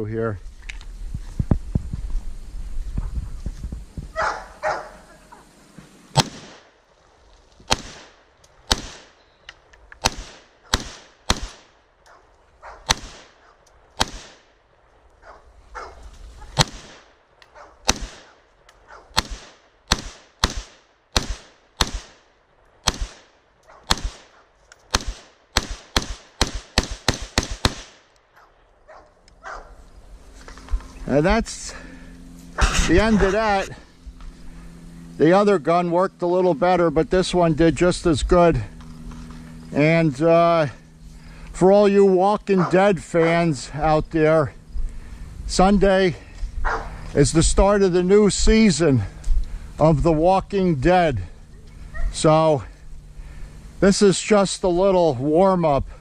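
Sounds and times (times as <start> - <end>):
rifle shots with ringing tail: 6.1 - 6.9, 7.7 - 9.4, 10.0 - 12.0, 12.6 - 14.7, 15.8 - 28.5.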